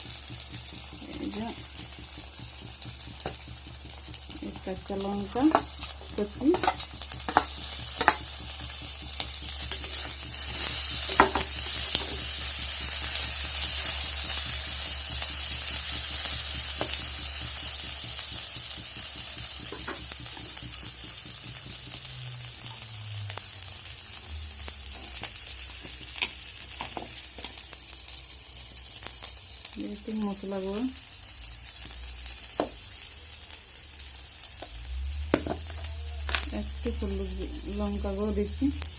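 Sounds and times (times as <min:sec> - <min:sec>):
food sizzling in hot oil: 0:00.0 - 0:38.9
spatula clicking against pan: 0:06.5 - 0:10.0.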